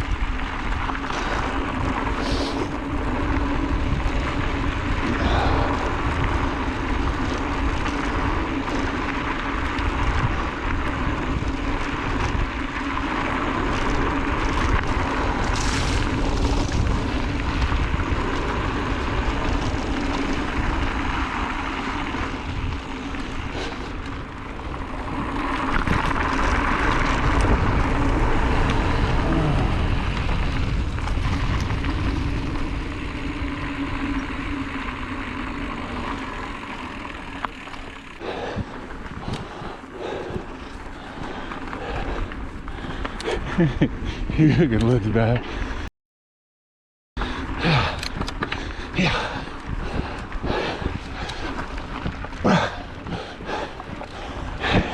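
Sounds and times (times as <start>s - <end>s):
wind rushing over microphone: 0.0s - 35.8s, 47.2s - 54.9s
bike tyres rumbling and rattling: 0.0s - 45.9s, 47.2s - 54.9s.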